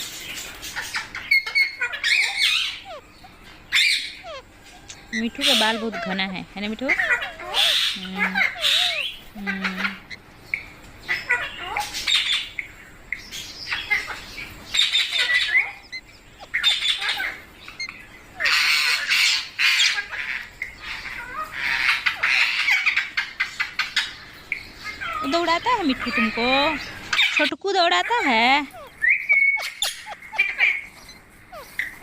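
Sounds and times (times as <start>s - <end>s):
parrot squawking: 0.6s - 10.3s, 11.0s - 12.6s, 13.7s - 32.0s
parrot chirps and clicks: 0.8s - 6.1s, 28.5s - 32.0s.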